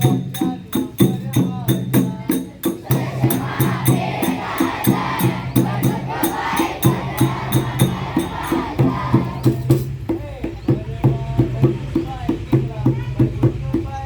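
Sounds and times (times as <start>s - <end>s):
children's song with quick beat: 0.0s - 14.0s
chorus of group voices: 2.2s - 9.9s.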